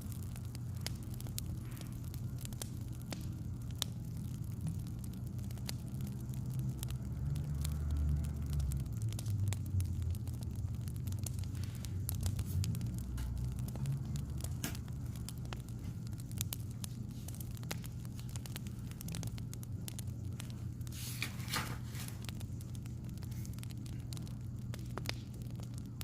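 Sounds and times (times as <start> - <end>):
low steady hum: 0.0 - 26.0
wood fire crackling: 0.0 - 26.0
rustling hiss: 11.3 - 24.1.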